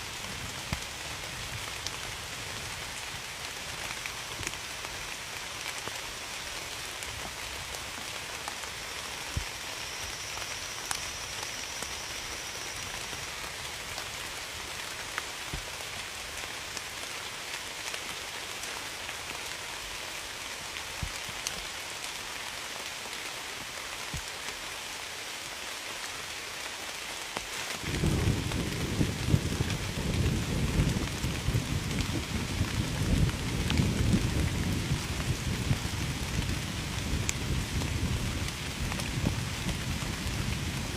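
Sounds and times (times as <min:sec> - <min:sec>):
steady rain falling: 0:00.0 - 0:40.9
low rumble of thunder: 0:27.8 - 0:40.9.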